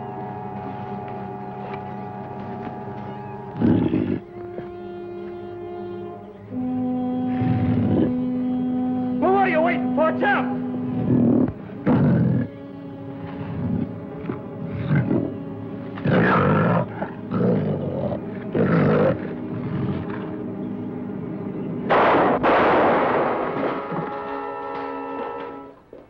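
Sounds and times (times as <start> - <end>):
dramatic music with held chords: 0.0 - 25.8
jaguar snarling and roaring: 3.0 - 4.4, 7.2 - 8.4, 10.6 - 20.6.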